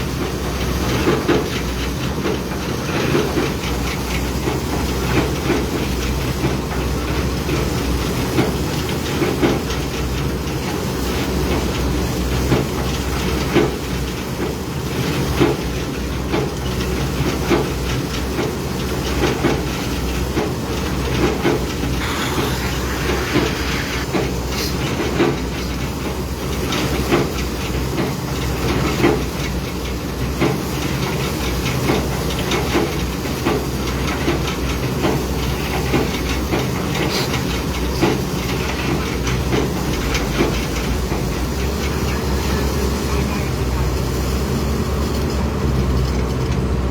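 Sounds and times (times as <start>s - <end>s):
diesel engine hum: 21.8s - 24.6s.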